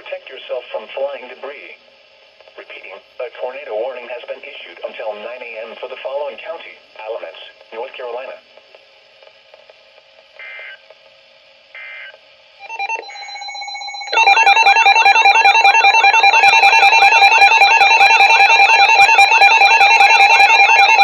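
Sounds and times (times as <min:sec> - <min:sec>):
digital data bursts: 0:11.7 - 0:21.0
steady beeping tones: 0:11.8 - 0:21.0
warbling alarm tones: 0:11.8 - 0:21.0.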